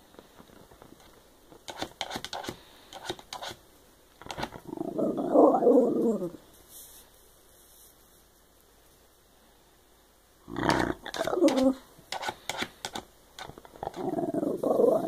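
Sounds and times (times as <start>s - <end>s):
dog grumbling vocalization: 4.6s - 6.4s, 10.5s - 11.8s, 13.8s - 15.0s.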